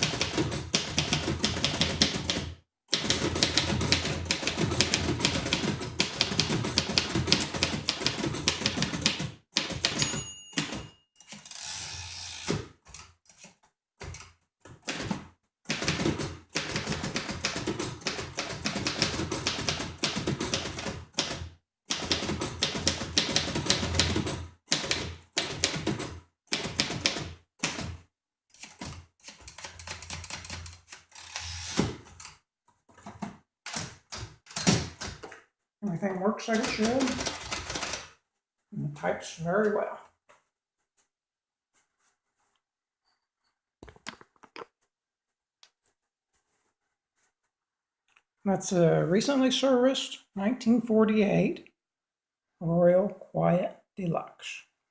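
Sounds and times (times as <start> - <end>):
typewriter carriage return: 0.0 - 13.5
typewriter bell ding: 9.8 - 11.5.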